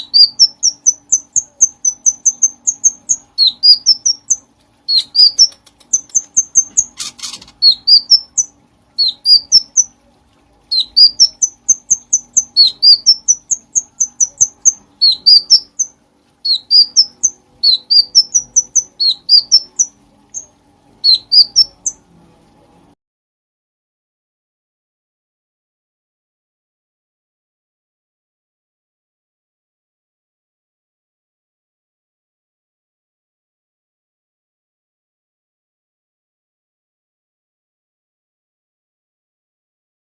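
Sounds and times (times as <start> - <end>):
faint steady hum: 0.0 - 23.0
bird singing quick chirps: 4.9 - 9.9, 10.7 - 15.9, 16.5 - 22.0.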